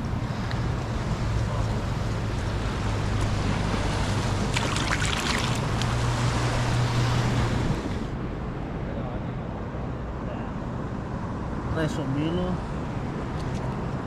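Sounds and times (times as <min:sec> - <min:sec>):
wind on microphone: 0:00.0 - 0:08.5
ocean surf against seawall: 0:00.0 - 0:14.0.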